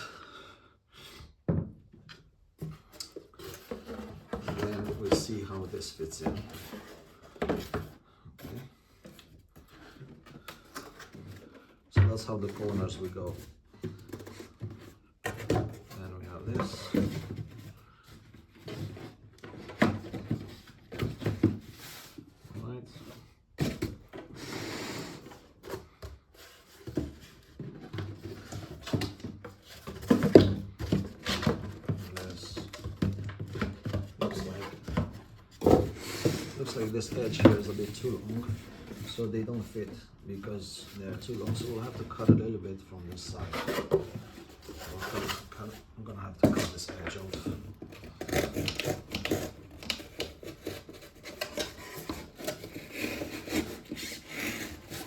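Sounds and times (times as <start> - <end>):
cardboard scraping: 2.7 - 55.0
cardboard knocks and thumps: 25.2 - 39.8.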